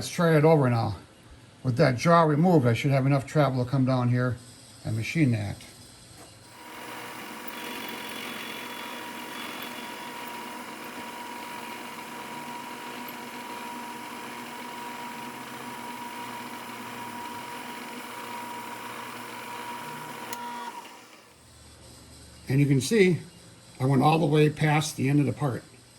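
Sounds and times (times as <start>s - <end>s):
milling machine cutting metal: 6.5s - 21.4s
constant machine whine: 6.5s - 21.5s.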